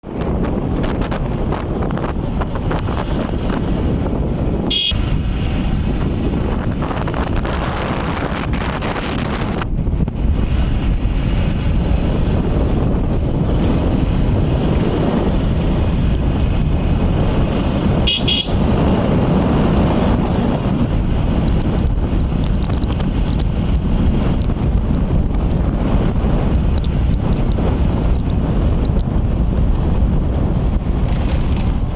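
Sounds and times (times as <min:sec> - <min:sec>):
motorcycle engine running: 0:00.0 - 0:31.9
road noise: 0:00.0 - 0:31.9
wind rush on microphone: 0:00.0 - 0:31.9
short horn beep: 0:04.7 - 0:05.0, 0:18.1 - 0:18.6.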